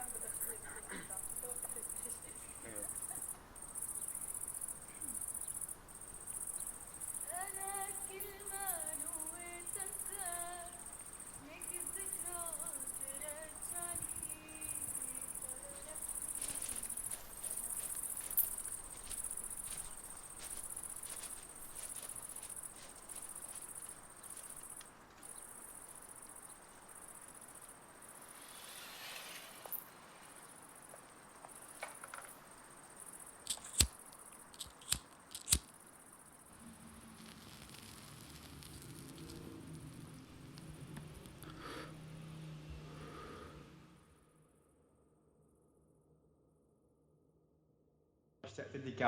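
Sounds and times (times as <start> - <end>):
crickets chirping: 0.0 - 47.2
sharp clicks: 33.4 - 35.7.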